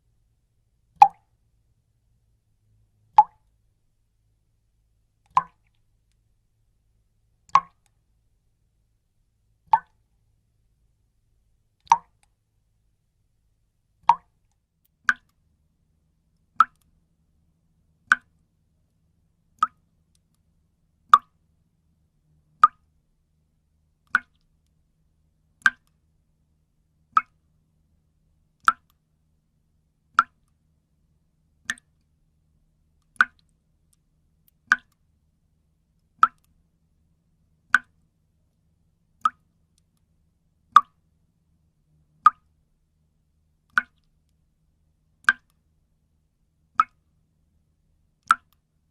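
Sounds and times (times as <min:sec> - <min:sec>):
water dripping: 0:01.0 - 0:01.3, 0:03.1 - 0:03.6, 0:05.3 - 0:05.9, 0:07.5 - 0:07.9, 0:09.7 - 0:10.0, 0:11.8 - 0:12.4, 0:14.0 - 0:14.4, 0:15.1 - 0:15.4, 0:16.6 - 0:17.0, 0:18.1 - 0:18.4, 0:19.6 - 0:20.4, 0:22.6 - 0:22.9, 0:24.1 - 0:24.6, 0:25.6 - 0:26.0, 0:27.2 - 0:27.4, 0:31.7 - 0:32.0, 0:33.0 - 0:35.0, 0:36.0 - 0:36.5, 0:37.7 - 0:38.0, 0:39.2 - 0:40.0, 0:42.2 - 0:42.5, 0:43.7 - 0:44.2, 0:45.2 - 0:45.6, 0:46.8 - 0:47.0.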